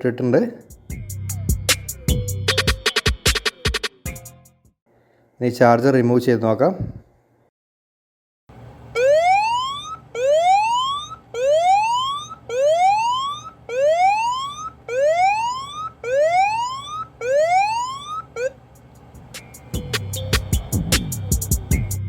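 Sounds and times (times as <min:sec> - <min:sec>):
phone alarm siren whoop: 0:09.0 - 0:18.6.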